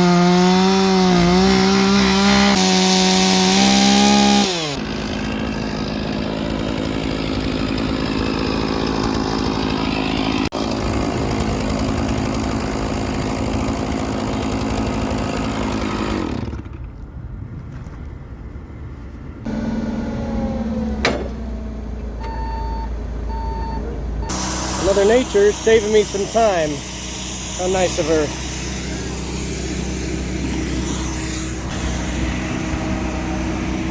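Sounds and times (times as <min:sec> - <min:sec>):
heavy machine engine running: 0:19.5 - 0:33.9
short beeps: 0:22.2 - 0:24.3.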